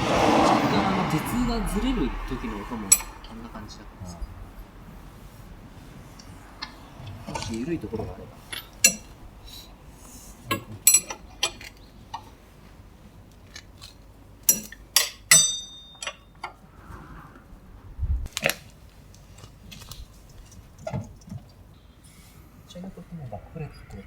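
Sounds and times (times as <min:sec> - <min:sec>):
metal tools clinking and knocking: 0:02.9 - 0:03.4, 0:06.6 - 0:12.2, 0:13.4 - 0:16.6.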